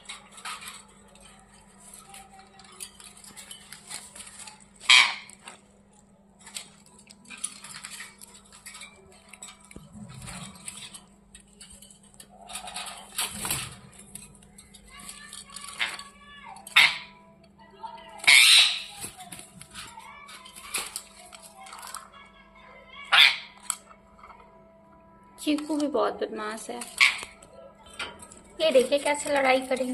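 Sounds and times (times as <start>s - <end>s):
light metallic clinks and rattles: 0.0s - 18.1s
parakeets moving in cage: 0.0s - 29.9s.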